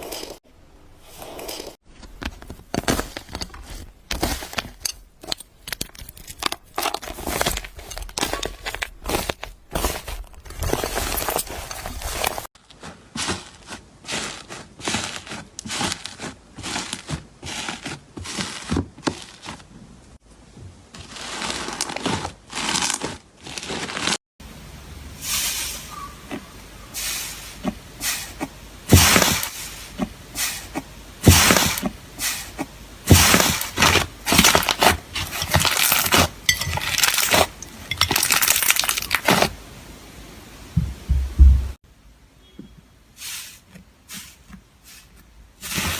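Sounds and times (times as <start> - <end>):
deep thuds: 40.7 - 41.8.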